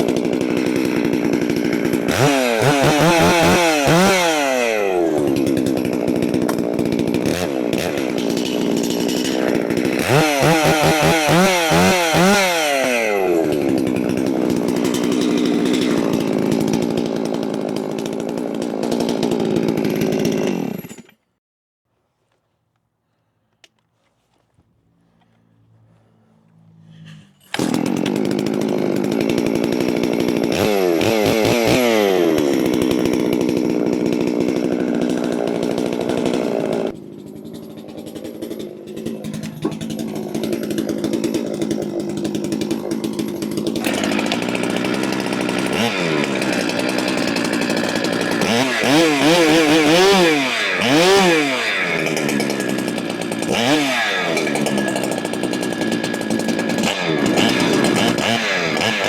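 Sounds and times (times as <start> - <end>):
chainsaw running: 0.0 - 21.3, 24.8 - 59.0.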